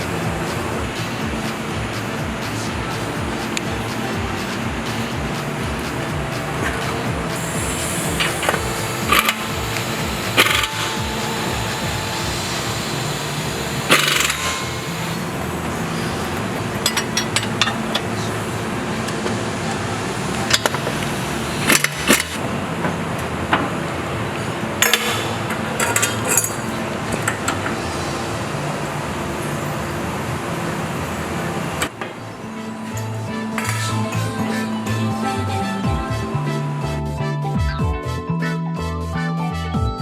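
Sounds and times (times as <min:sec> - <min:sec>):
steady background noise: 0:00.0 - 0:38.1
metal tools clinking: 0:06.6 - 0:23.0, 0:24.8 - 0:27.8.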